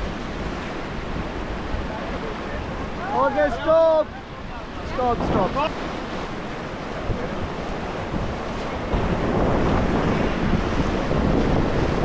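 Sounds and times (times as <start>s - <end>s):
rushing river water: 0.0s - 12.0s
wind buffeting microphone: 0.0s - 12.0s.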